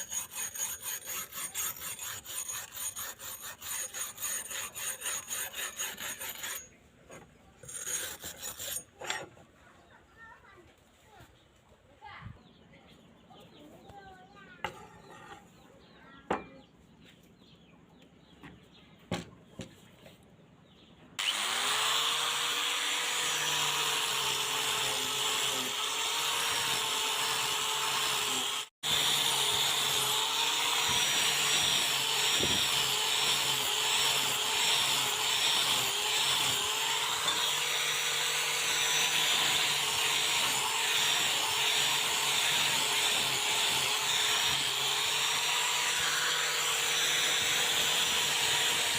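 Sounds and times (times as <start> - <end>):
power tool motor grinding knife: 0.0 - 9.4, 21.2 - 48.9.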